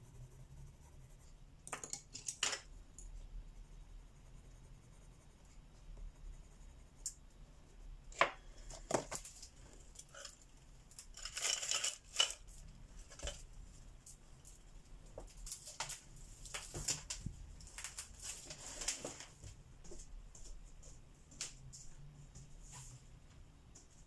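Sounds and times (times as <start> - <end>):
scratchy coloring strokes on paper: 0.0 - 1.6, 2.6 - 8.8
tools clicking and knocking: 1.6 - 3.1.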